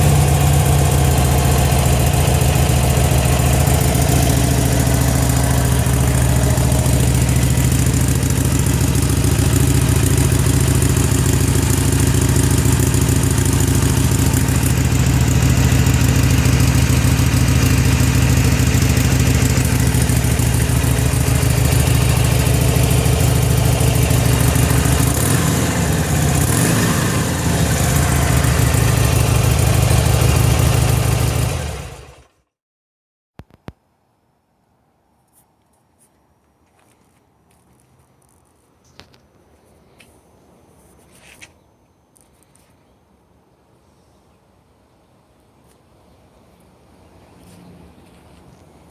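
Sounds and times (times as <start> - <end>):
motorcycle engine idling: 0.0 - 32.4.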